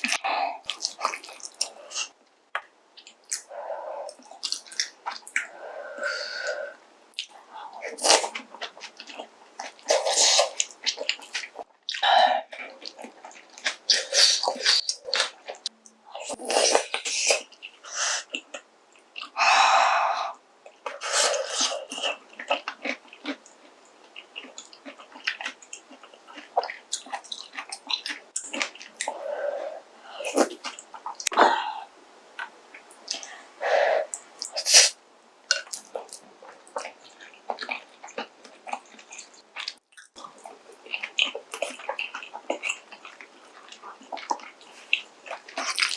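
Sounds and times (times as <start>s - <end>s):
wet chewing: 0.0s - 5.6s, 20.7s - 29.3s, 35.5s - 45.9s.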